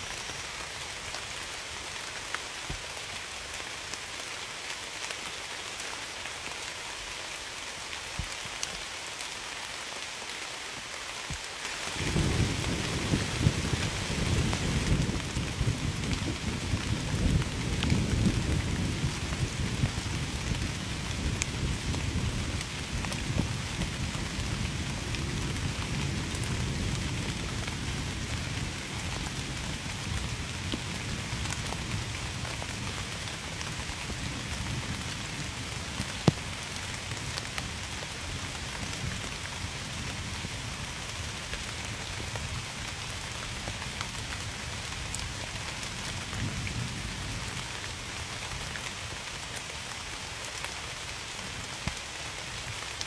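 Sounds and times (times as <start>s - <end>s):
rain falling: 0.0s - 53.0s
distant thunder rumble: 12.0s - 27.8s.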